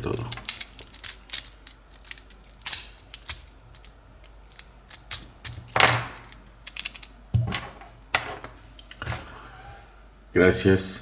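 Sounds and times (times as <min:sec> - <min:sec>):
padlock clicking and rattling: 0:00.0 - 0:07.2
padlock scraping clatter: 0:00.0 - 0:07.2.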